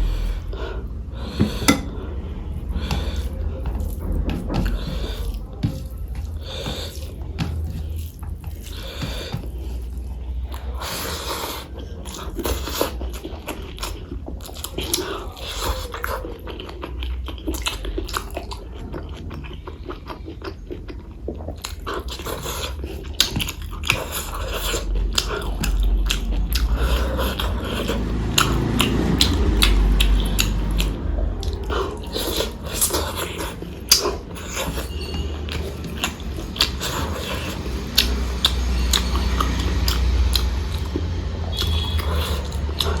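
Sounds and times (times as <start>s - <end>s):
low steady hum: 0.0s - 10.6s
chewing and crunching food: 0.0s - 43.0s
wet mouth clicks: 25.2s - 31.7s, 36.0s - 43.0s.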